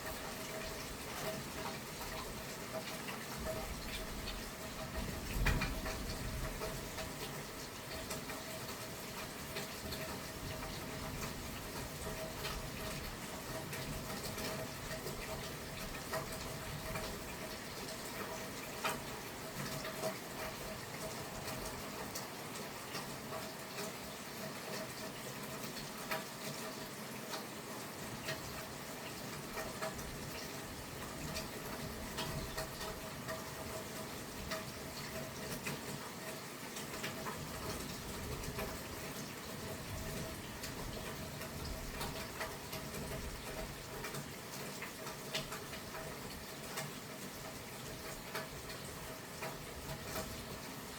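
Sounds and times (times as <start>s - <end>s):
rain drops on hard surface: 0.0s - 50.9s.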